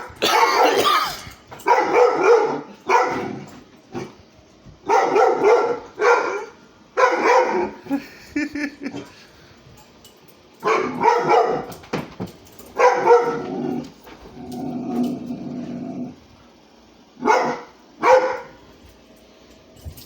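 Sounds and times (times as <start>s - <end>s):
dog barking: 1.6s - 3.3s, 4.8s - 7.8s, 10.6s - 11.8s, 12.8s - 13.5s, 17.2s - 18.6s.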